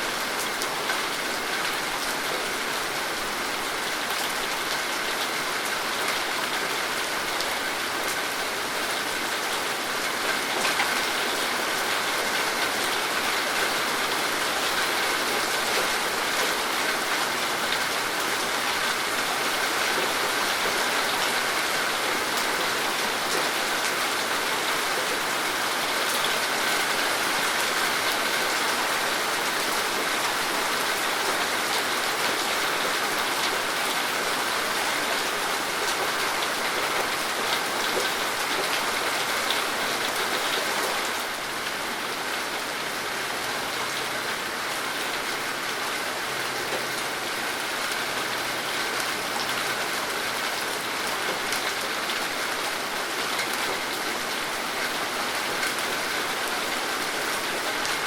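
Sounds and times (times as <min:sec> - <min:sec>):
rain pattering on surfaces: 0:00.0 - 0:58.0.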